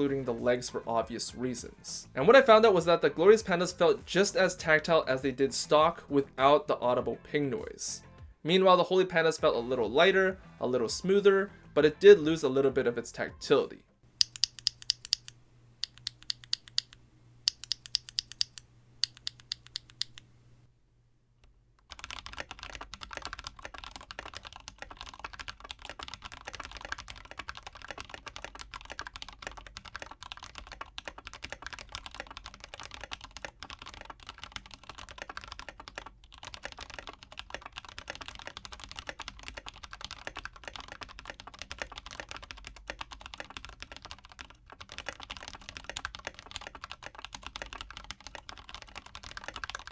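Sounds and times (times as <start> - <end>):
mechanical keyboard typing: 14.2 - 20.2, 21.9 - 49.9.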